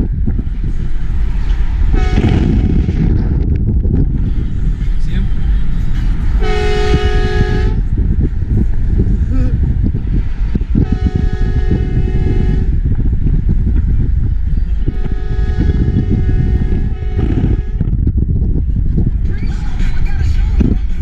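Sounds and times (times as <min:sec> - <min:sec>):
moving car rumble: 0:00.0 - 0:21.0
train horn blasts: 0:01.9 - 0:03.1, 0:06.4 - 0:07.9, 0:10.7 - 0:12.8, 0:14.8 - 0:17.9.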